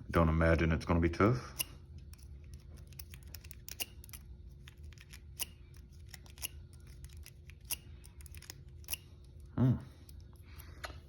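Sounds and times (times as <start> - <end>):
lock pick clicking in padlock: 1.6 - 9.0.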